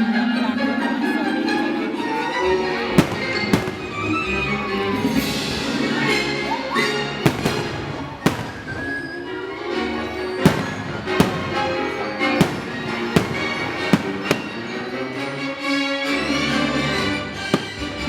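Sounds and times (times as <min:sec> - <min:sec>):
orchestral music with strings: 0:00.0 - 0:18.0
firework shells bursting: 0:03.0 - 0:06.0, 0:07.1 - 0:09.4, 0:10.2 - 0:15.3, 0:17.4 - 0:18.0.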